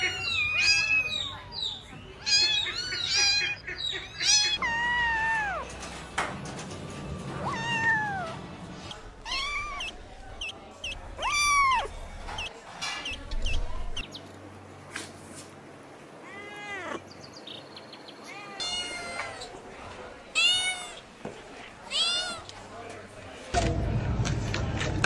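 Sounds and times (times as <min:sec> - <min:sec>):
kittens meowing: 0:00.0 - 0:05.7, 0:07.4 - 0:08.4, 0:09.2 - 0:12.5, 0:16.2 - 0:17.1, 0:18.2 - 0:19.5.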